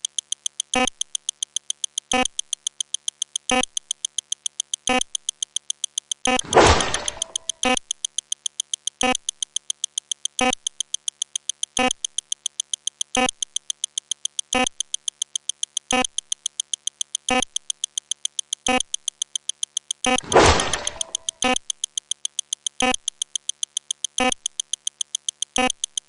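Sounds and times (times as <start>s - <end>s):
rapid high-pitched electronic ticks: 0.0s - 26.0s
deeper click: 6.4s - 7.6s.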